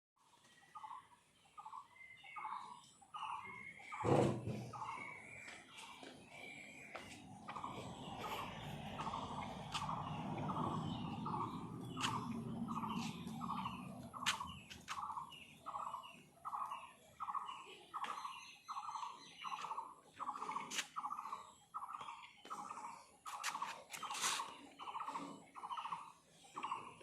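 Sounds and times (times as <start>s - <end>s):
low rumble: 7.4s - 14.7s.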